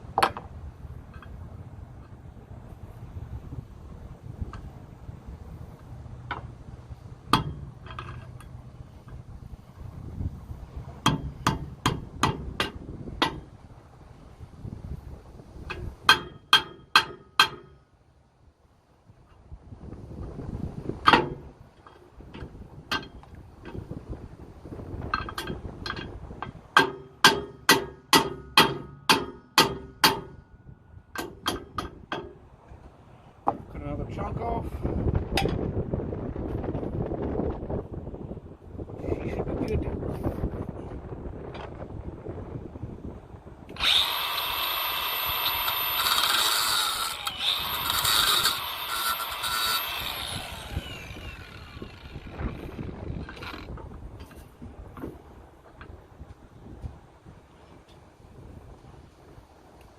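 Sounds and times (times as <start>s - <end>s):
hammer striking metal: 26.8s - 30.4s
angle grinder whining: 43.7s - 53.7s.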